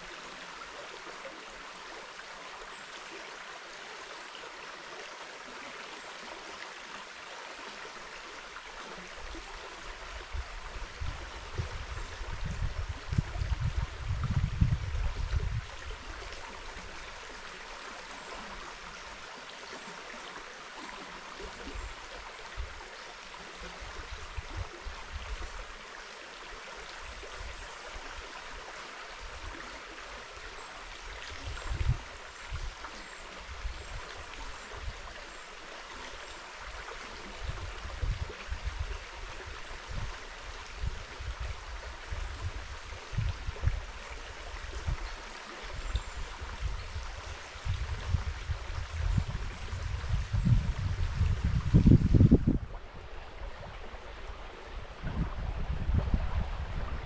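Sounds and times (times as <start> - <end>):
wind buffeting microphone: 10.2 - 16.0, 45.8 - 57.0
river water rushing: 15.1 - 57.0.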